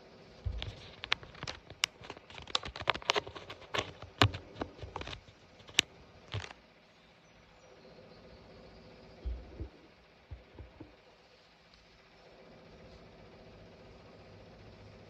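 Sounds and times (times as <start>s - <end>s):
faint steady hiss: 4.4s - 15.0s
sharp clicks and taps: 9.3s - 11.0s.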